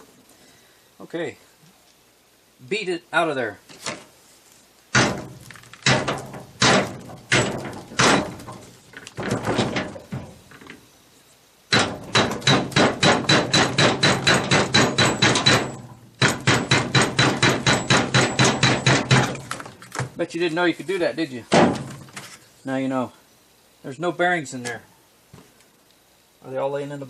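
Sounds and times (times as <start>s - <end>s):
hammer blows ringing on steel: 11.7s - 19.4s.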